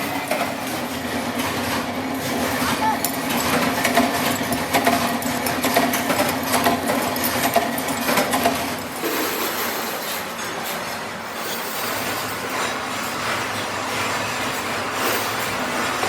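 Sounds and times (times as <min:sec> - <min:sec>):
workshop machinery humming: 0:00.0 - 0:16.0
rapid metal clicks and clinks: 0:03.0 - 0:10.4.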